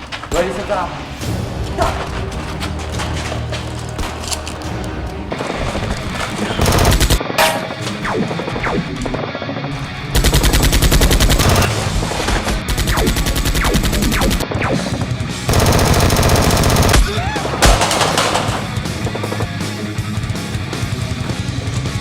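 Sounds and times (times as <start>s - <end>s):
background music: 0.0s - 22.0s
automatic gunfire: 6.4s - 7.4s, 9.8s - 11.7s, 15.5s - 18.8s.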